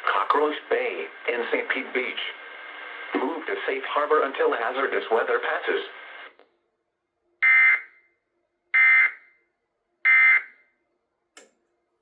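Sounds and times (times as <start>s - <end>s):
brief click: 11.4s - 11.6s.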